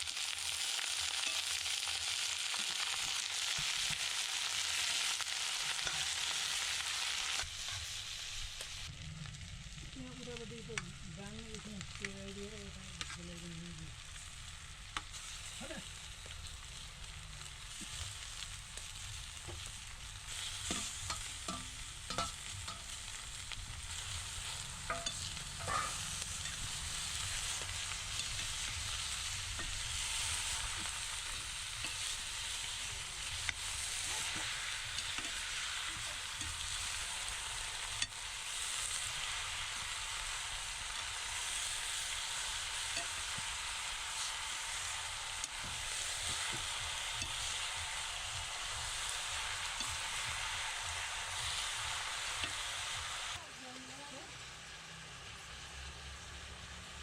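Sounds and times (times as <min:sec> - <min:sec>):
curry sizzling in hot oil: 0:00.0 - 0:57.0
metal ladle clinking on pan: 0:20.7 - 0:22.9, 0:24.9 - 0:26.6.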